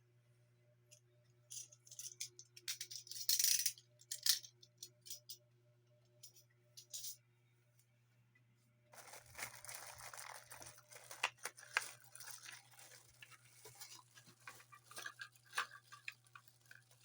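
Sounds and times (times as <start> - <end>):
packaging rustling: 9.0 - 17.0.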